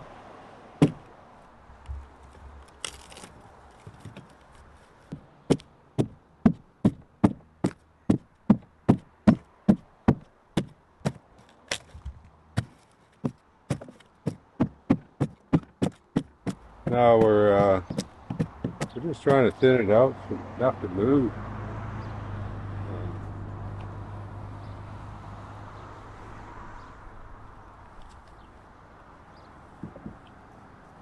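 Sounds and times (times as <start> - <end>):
hand tool chopping wood: 0.8 - 1.0, 2.7 - 4.4, 5.1 - 19.6.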